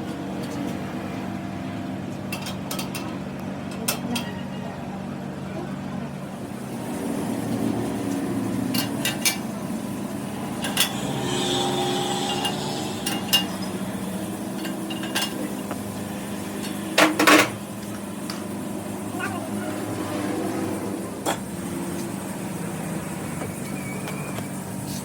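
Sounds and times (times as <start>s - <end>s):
hand tools knocking on metal: 12.1s - 16.0s.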